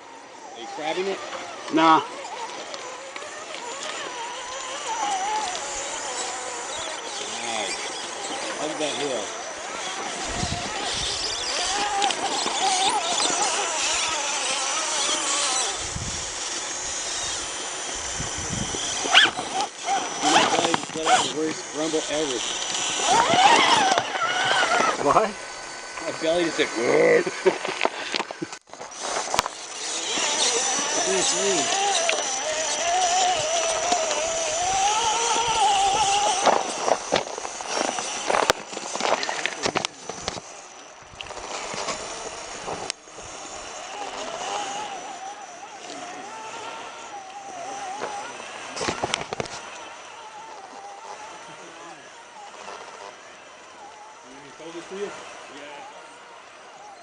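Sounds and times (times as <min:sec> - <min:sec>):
electric motor whining: 0:00.0 - 0:57.0.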